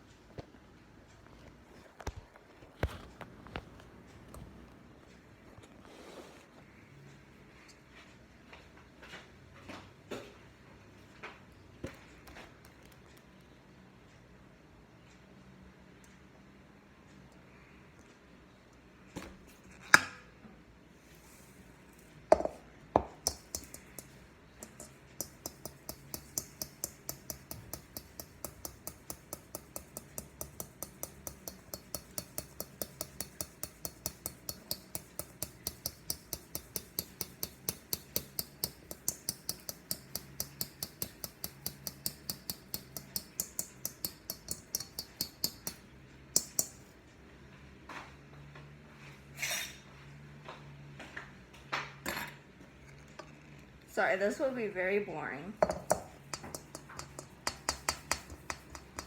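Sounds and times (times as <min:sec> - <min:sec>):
flour sifter clicking: 0:22.4 - 0:45.8.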